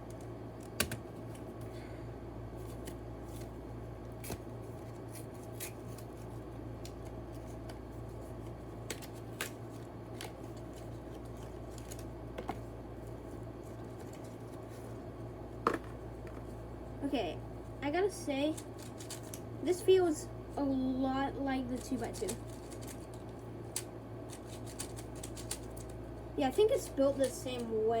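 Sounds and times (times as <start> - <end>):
low electrical hum: 0.0 - 28.0.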